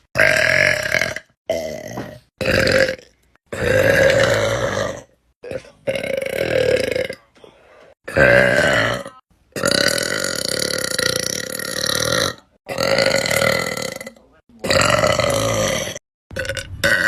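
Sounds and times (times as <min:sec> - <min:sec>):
girl burping: 0:08.1 - 0:17.0.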